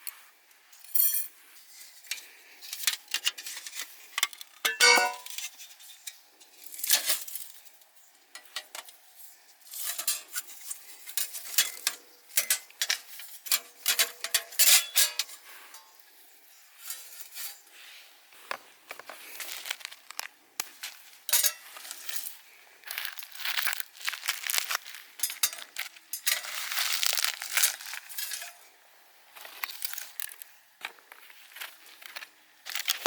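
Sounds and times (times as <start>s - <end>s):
cookware clinking and scraping: 4.7s - 6.2s, 11.2s - 15.9s.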